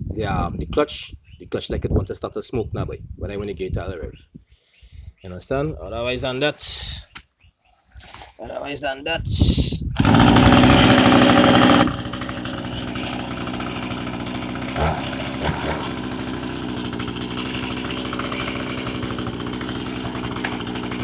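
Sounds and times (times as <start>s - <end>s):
chainsaw engine idling: 10.0s - 21.0s.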